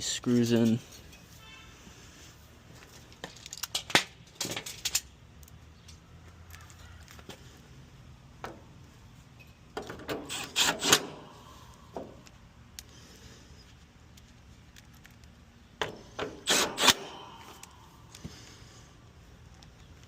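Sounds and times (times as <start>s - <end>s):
screws and tools clicking and rattling: 3.1s - 7.2s, 9.8s - 11.2s, 13.6s - 15.4s.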